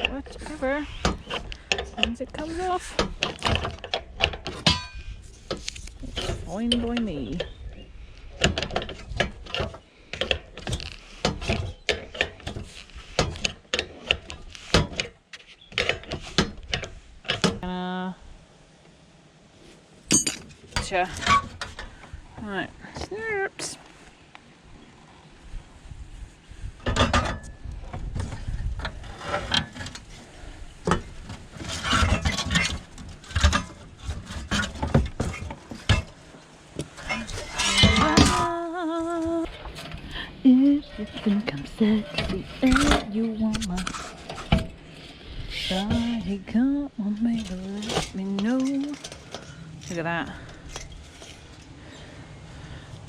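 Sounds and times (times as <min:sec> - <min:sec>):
metal parts clicking and clinking: 0:20.1 - 0:21.8.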